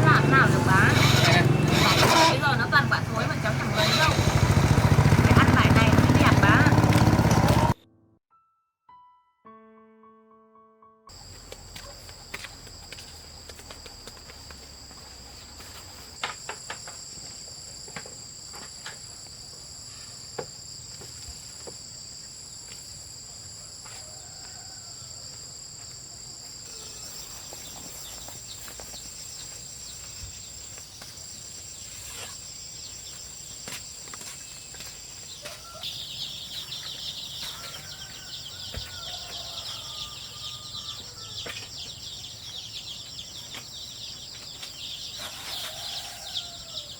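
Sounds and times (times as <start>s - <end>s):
insects droning: 0.0s - 6.8s, 11.1s - 46.9s
chickens cheeping and clucking: 34.8s - 46.9s.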